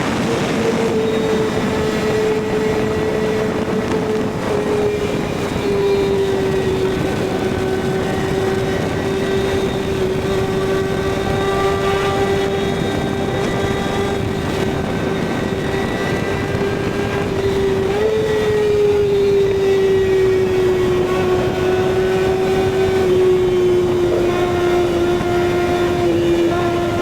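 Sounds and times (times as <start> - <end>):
motorcycle engine high-revving: 0.0 - 27.0
wind and road noise: 0.0 - 27.0.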